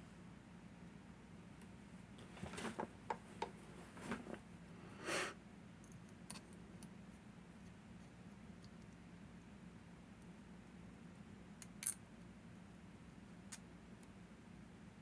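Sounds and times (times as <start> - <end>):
lock picks clicking and tapping: 11.6 - 12.0.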